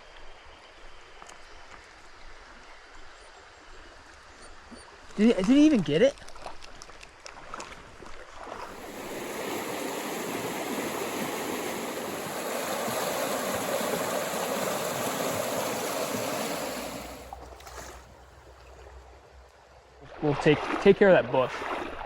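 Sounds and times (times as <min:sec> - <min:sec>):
creek water rushing: 0:08.5 - 0:18.2.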